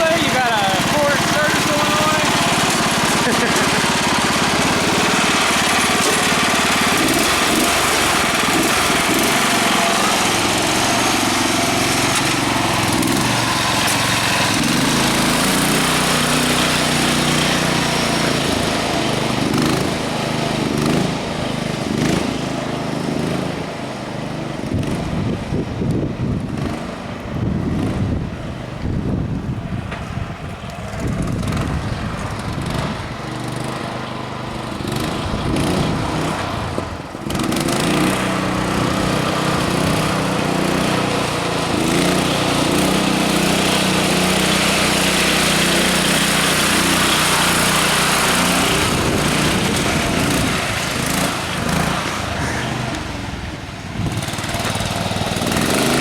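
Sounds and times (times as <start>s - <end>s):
garden tractor engine running: 0.0s - 56.0s
machine rattles and knocks: 0.1s - 18.9s, 54.0s - 56.0s.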